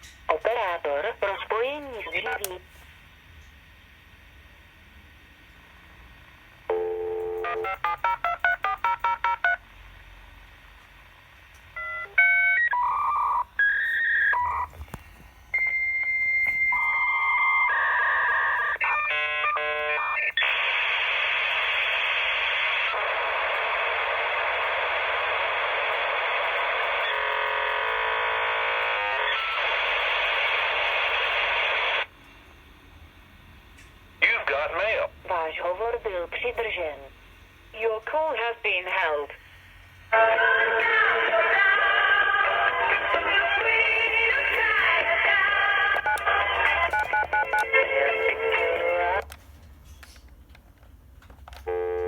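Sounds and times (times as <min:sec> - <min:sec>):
loud steady modem hiss: 0:00.0 - 0:52.0
dial tone: 0:06.7 - 0:09.6, 0:51.6 - 0:52.0
touch-tone digits: 0:11.8 - 0:14.7, 0:46.0 - 0:47.8
modem handshake tones and beeps: 0:11.8 - 0:20.8, 0:42.5 - 0:49.4.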